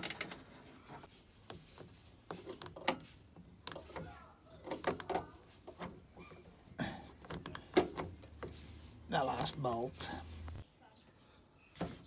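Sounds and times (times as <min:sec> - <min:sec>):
spanner clicks and knocks: 0:00.0 - 0:00.4.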